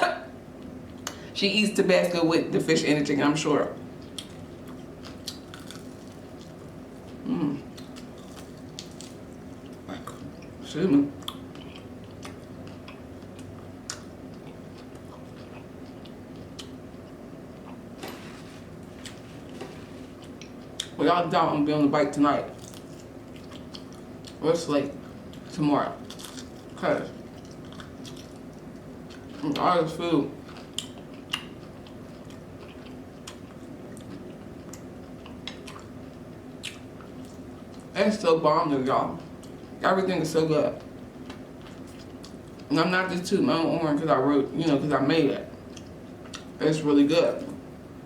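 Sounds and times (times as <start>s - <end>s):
chewing food: 3.9s - 21.0s, 22.4s - 38.0s, 39.1s - 39.8s, 40.6s - 42.7s, 45.4s - 46.6s.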